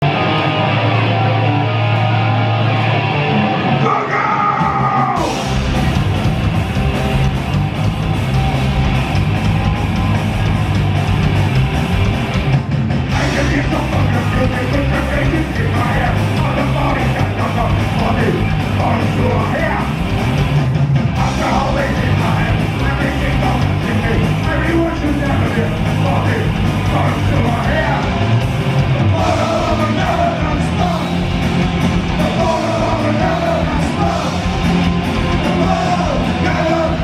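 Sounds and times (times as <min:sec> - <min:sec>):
bass guitar: 0:00.0 - 0:37.0
distorted electric guitars: 0:00.0 - 0:37.0
drums: 0:00.0 - 0:37.0
shouted vocals: 0:03.6 - 0:05.5, 0:28.9 - 0:31.4, 0:32.1 - 0:37.0.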